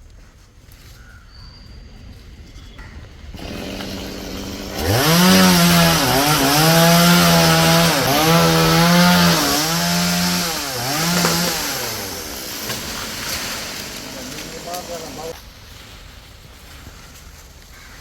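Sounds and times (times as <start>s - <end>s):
chainsaw cutting wood: 3.3s - 15.4s.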